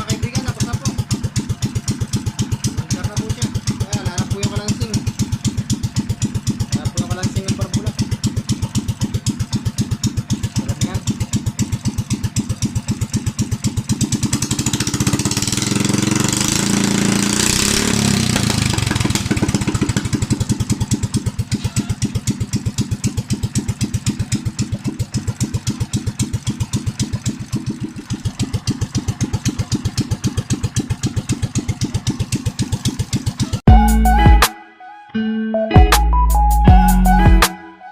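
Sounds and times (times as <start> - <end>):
small engine idling and revving: 0.0 - 34.2.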